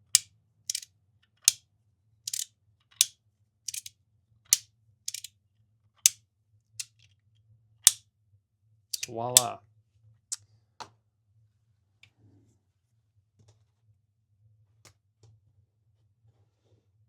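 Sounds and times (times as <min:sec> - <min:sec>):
magnetic fidget slider clicking: 0:00.0 - 0:00.8, 0:02.3 - 0:03.1, 0:03.7 - 0:03.9, 0:04.5 - 0:05.3.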